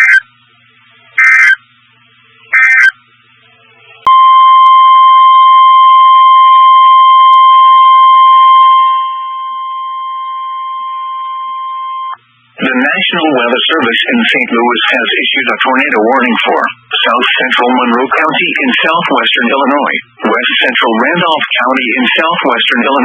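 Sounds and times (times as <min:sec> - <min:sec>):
screeching digital data bursts: 0:01.2 - 0:01.6, 0:02.6 - 0:03.0.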